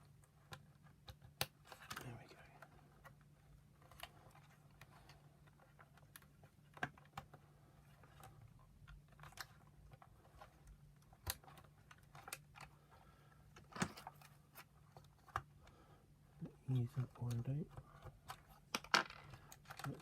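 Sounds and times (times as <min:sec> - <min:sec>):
faint low hum: 0:00.0 - 0:20.0
plastic parts clicking and tapping: 0:03.8 - 0:15.8, 0:17.0 - 0:20.0.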